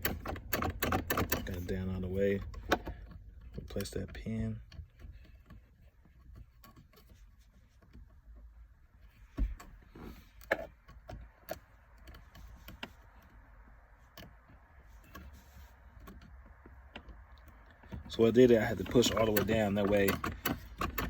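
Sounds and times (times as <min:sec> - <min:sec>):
plastic knob clicks and knocks: 0:00.0 - 0:01.7, 0:18.7 - 0:21.0.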